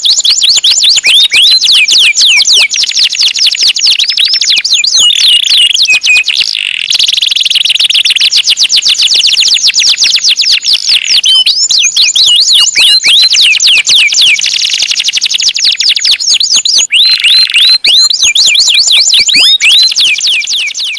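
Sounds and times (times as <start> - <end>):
canary singing: 0.0 - 20.9.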